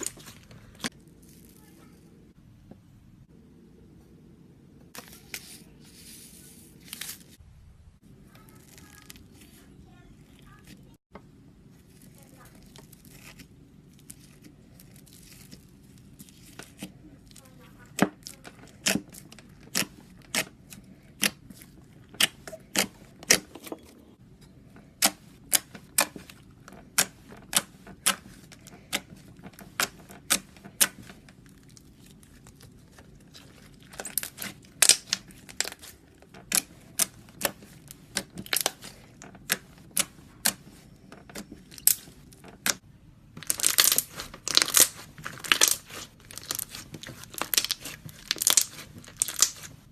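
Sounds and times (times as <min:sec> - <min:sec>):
slime clicking and popping: 0:43.4 - 0:49.7.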